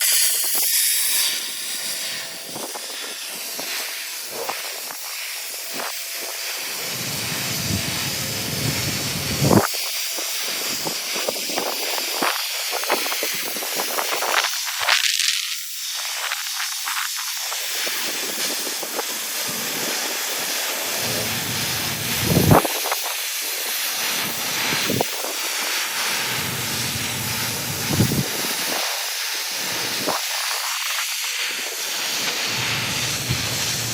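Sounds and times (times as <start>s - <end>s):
welding arc hissing: 0.0s - 33.9s.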